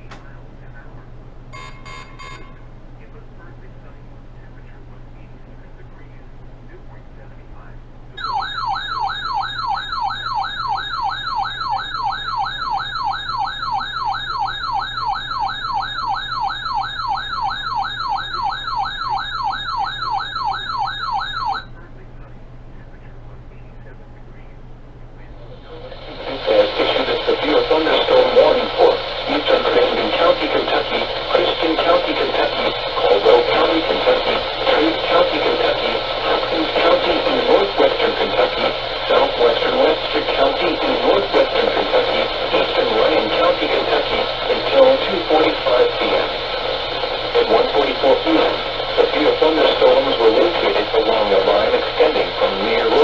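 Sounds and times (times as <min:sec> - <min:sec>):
voice over radio: 0:00.0 - 0:01.2, 0:02.3 - 0:53.0
low steady hum: 0:00.0 - 0:53.0
siren-like alert tone sweeping down: 0:08.2 - 0:21.7
static hiss: 0:25.4 - 0:53.0.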